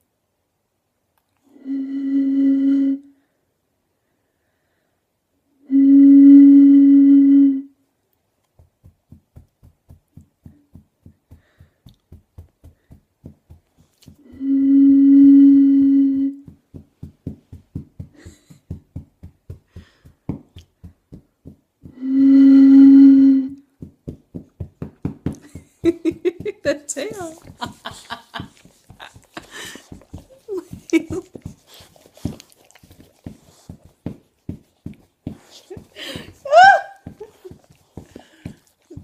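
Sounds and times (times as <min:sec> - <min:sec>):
fog horn blasts: 0:01.6 - 0:03.1, 0:05.7 - 0:07.7, 0:14.4 - 0:16.4, 0:22.0 - 0:23.6
soft pulses: 0:05.7 - 0:07.7, 0:14.0 - 0:19.1, 0:21.8 - 0:23.8.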